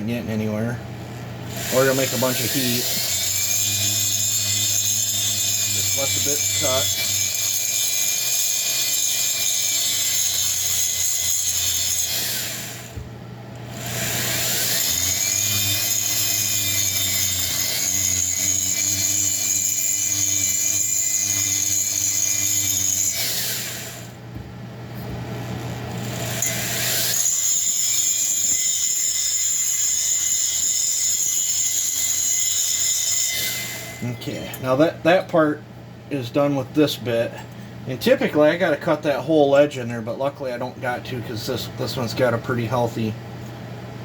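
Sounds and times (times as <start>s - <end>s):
rotary tool grinding metal: 1.5s - 13.0s, 13.6s - 24.2s, 25.5s - 34.8s.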